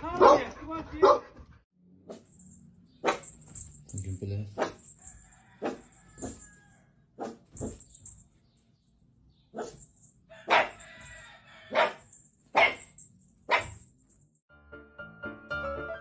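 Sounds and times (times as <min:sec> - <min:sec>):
dog barking: 0:00.0 - 0:01.4, 0:03.0 - 0:03.4, 0:04.6 - 0:04.8, 0:05.6 - 0:06.4, 0:07.2 - 0:07.9, 0:09.5 - 0:09.8, 0:10.4 - 0:11.0, 0:11.7 - 0:13.8.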